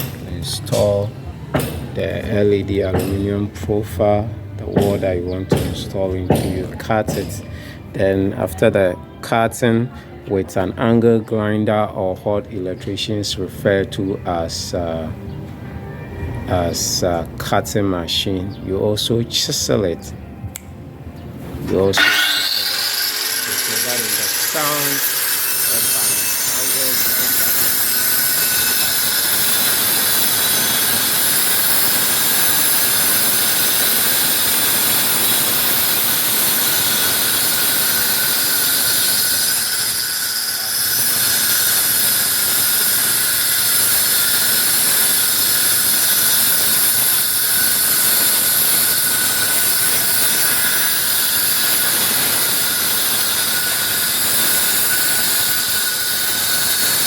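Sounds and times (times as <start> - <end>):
angle grinder cutting wall: 21.6 - 57.0.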